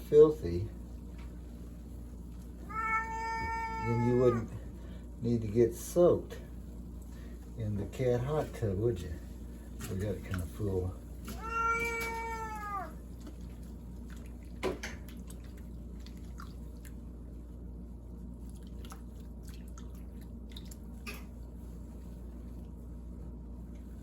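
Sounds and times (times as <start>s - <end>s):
water dripping and splashing in sink: 13.0s - 17.1s, 18.4s - 21.1s.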